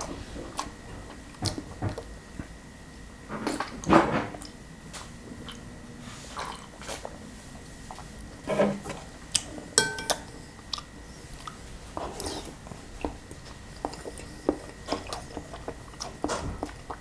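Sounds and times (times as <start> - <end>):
ringing clink: 9.8 - 10.3
metal utensils clicking on bowl: 9.8 - 10.4
chewing: 10.7 - 17.0.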